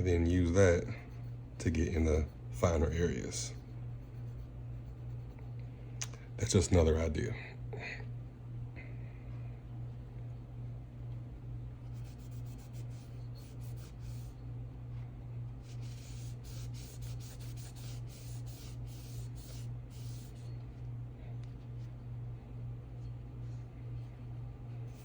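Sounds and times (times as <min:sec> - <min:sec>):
steady low hum: 0:00.0 - 0:25.0
cotton swab rubbing on metal: 0:11.9 - 0:14.4, 0:15.6 - 0:20.6.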